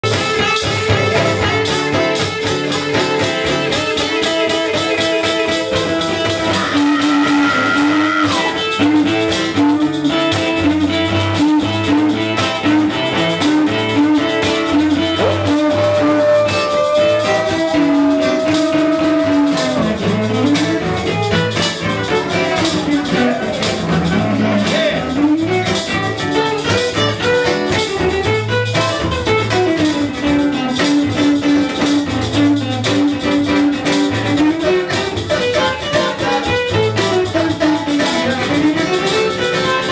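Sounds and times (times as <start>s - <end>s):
drum kit beat: 0.0s - 39.9s
guitars: 0.0s - 39.9s
gliding melody line: 14.9s - 20.8s.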